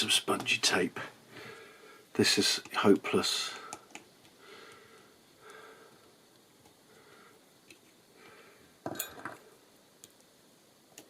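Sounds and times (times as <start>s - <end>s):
faint soft breaths: 1.0s - 2.2s, 3.3s - 8.8s.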